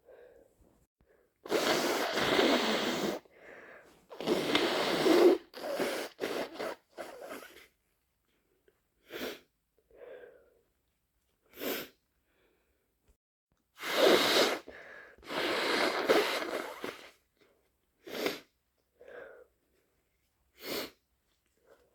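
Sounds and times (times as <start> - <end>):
loud wet sneezing: 1.4 - 3.3, 4.1 - 7.7, 13.8 - 17.2
person sniffling: 1.5 - 7.7.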